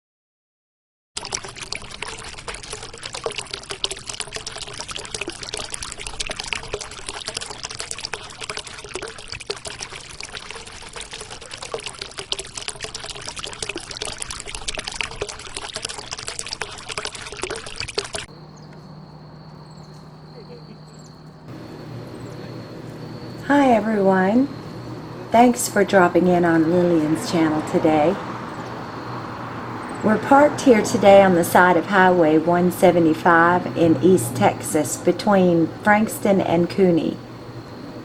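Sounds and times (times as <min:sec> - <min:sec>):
water pouring and splashing: 0:01.2 - 0:18.4, 0:24.5 - 0:37.9
thin high whine: 0:18.3 - 0:31.3
low hum: 0:18.3 - 0:38.0.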